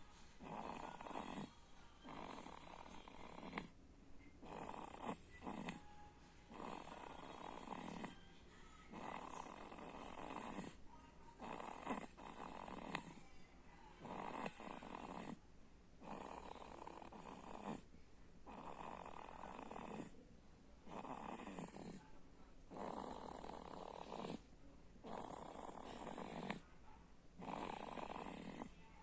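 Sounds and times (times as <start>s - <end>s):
person snoring: 0.4s - 3.7s, 4.4s - 5.8s, 6.5s - 8.2s, 8.8s - 10.8s, 11.4s - 13.2s, 14.0s - 15.4s, 16.0s - 17.8s, 18.5s - 20.1s, 20.9s - 22.0s, 22.7s - 24.4s, 25.0s - 26.6s, 27.4s - 28.7s.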